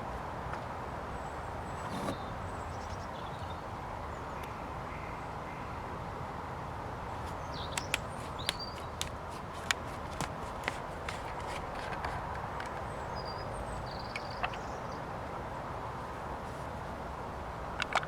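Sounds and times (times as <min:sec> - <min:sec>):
outdoor background noise: 0:00.0 - 0:18.0
light sharp clicks: 0:07.2 - 0:15.0
bird chirps: 0:07.3 - 0:09.0, 0:12.8 - 0:15.0.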